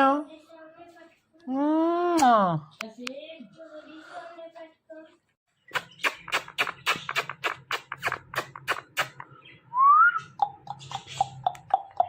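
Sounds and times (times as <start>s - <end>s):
parakeet chirps: 5.6s - 12.0s
parakeet clicks: 10.2s - 12.0s.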